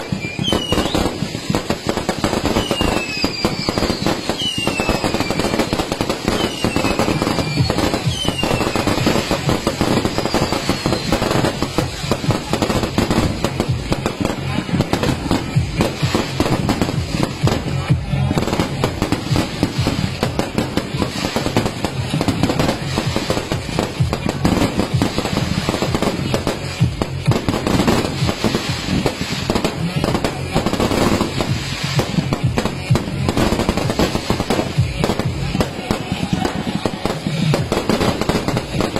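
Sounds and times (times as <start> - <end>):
falling firework whistles: 0.0 - 1.3, 2.0 - 11.6
fireworks bangs and crackling: 0.0 - 38.9.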